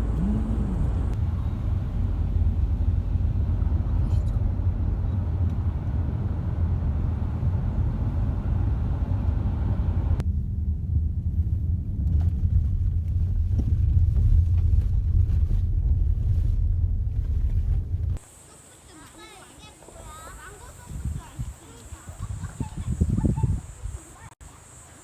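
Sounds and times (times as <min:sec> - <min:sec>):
car rumble: 0:00.0 - 0:24.8
high hiss: 0:18.2 - 0:25.0.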